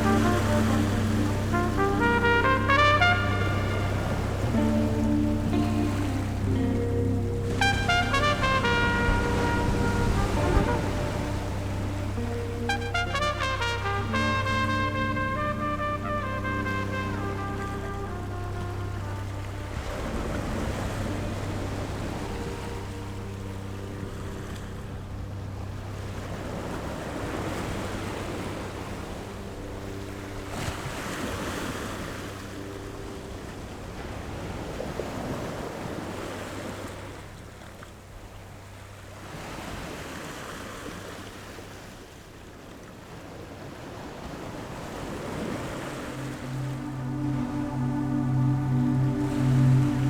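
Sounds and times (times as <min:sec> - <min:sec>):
low drone with held chords: 0:00.0 - 0:35.0, 0:45.4 - 0:50.0
surf-like wash of noise: 0:00.0 - 0:50.0.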